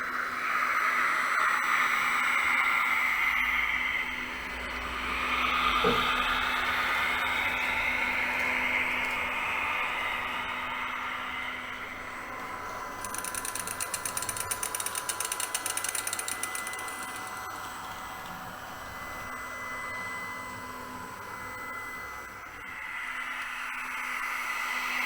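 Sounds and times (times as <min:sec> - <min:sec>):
model train motor whine: 0:11.7 - 0:17.8
rapid clicking clatter: 0:13.0 - 0:17.6.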